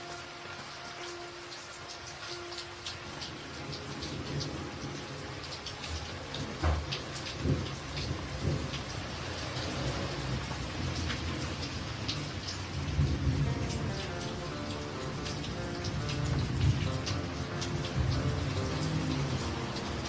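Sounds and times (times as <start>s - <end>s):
rain falling: 0.0s - 20.0s.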